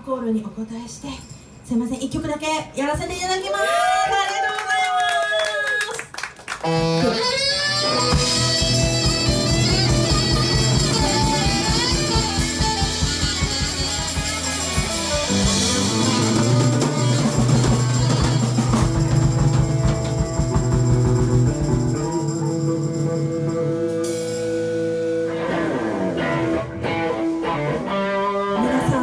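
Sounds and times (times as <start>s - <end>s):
drum kit: 6.6s - 29.0s
live rock band playing: 6.6s - 29.0s
held guitar notes ringing: 6.7s - 29.0s.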